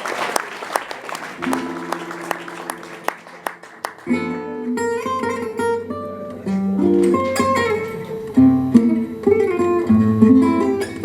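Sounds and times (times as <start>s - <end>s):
applause with scattered claps: 0.0s - 4.4s
acoustic jazz guitar: 1.4s - 11.0s.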